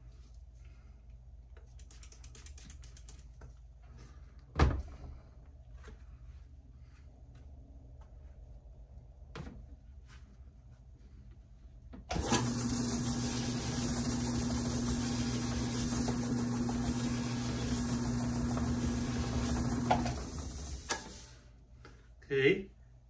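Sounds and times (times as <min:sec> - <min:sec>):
motor humming and hissing: 0:12.1 - 0:21.4.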